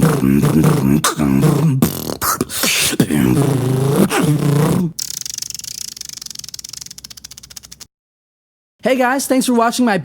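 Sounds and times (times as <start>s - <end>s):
low vocal buzz: 0.0s - 5.2s
vocal hiss with fast clicks: 4.1s - 7.9s.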